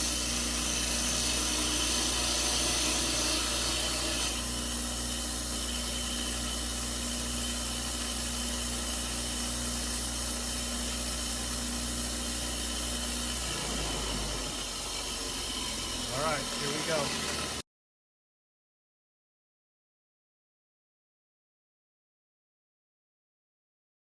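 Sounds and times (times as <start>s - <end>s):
machine humming and hissing: 0.0s - 17.6s.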